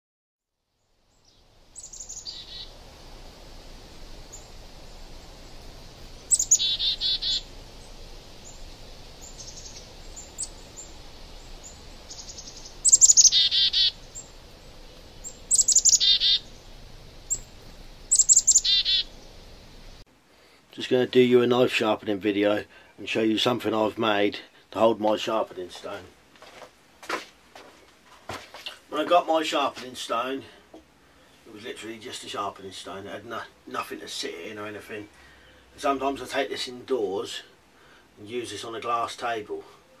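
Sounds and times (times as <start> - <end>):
faint background hiss: 0.5 - 40.0
songbird singing: 0.7 - 20.1.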